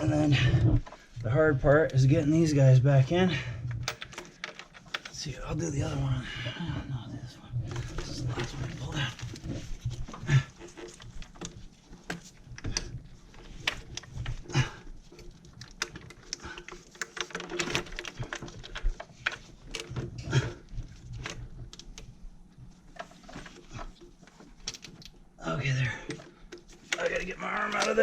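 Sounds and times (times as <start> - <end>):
plastic clips clicking and rattling: 10.1 - 20.0, 26.1 - 28.0.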